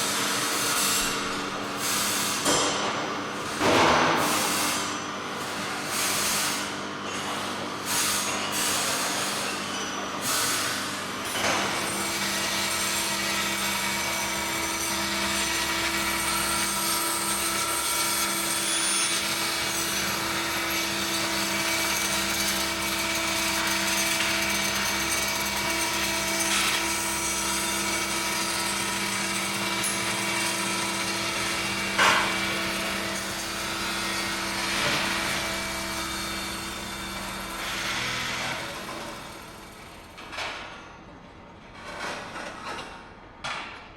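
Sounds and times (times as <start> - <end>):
machinery humming: 29.2 - 39.8.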